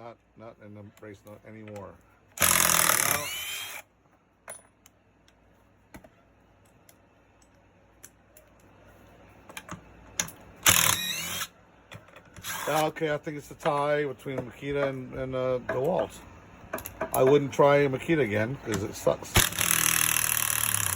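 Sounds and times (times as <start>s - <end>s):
clicks and taps of tools: 1.0s - 1.9s, 16.7s - 17.4s
impact driver motor whine: 2.4s - 3.8s, 10.6s - 11.5s.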